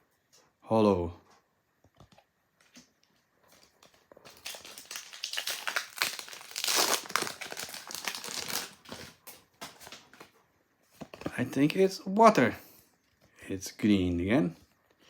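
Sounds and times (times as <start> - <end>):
foil wrapper crinkling and tearing: 3.6 - 10.0.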